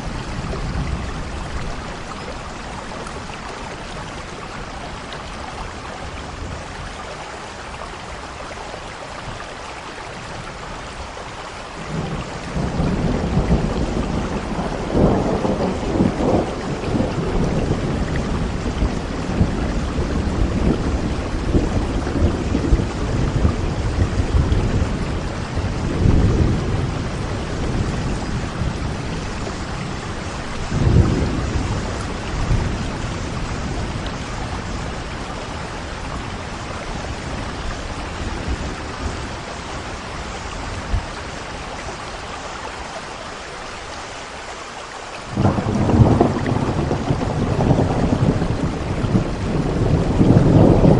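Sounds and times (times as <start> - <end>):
rain hissing: 0.0 - 50.9
thunder rumbling: 11.8 - 41.6, 45.3 - 50.9.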